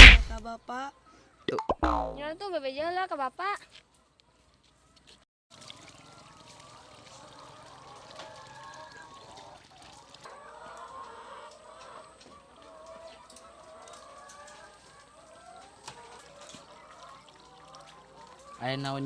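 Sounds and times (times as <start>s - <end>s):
chickens clucking: 4.8s - 19.0s.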